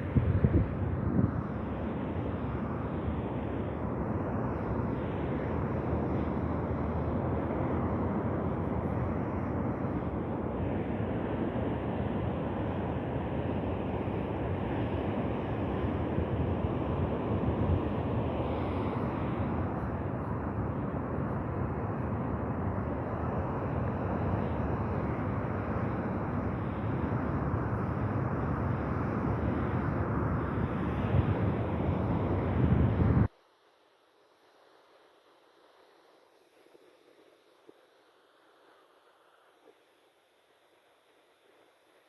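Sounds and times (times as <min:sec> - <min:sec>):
wind buffeting microphone: 0:00.0 - 0:33.3
wind: 0:00.0 - 0:42.0
sea surf: 0:01.0 - 0:33.3.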